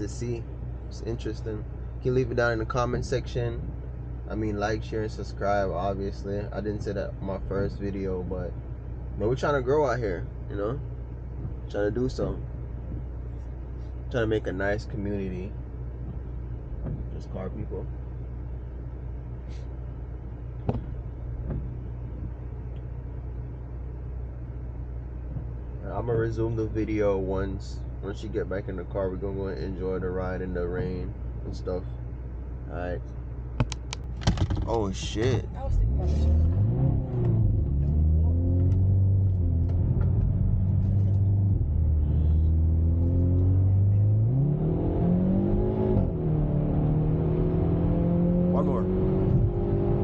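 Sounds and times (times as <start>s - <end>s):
car engine low hum: 0.0s - 50.0s
sharp click: 33.6s - 34.8s
car engine revving: 33.6s - 50.0s.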